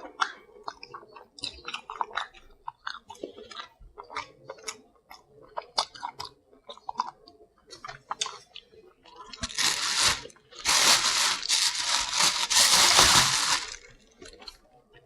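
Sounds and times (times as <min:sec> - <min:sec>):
person chewing: 0:00.1 - 0:14.6.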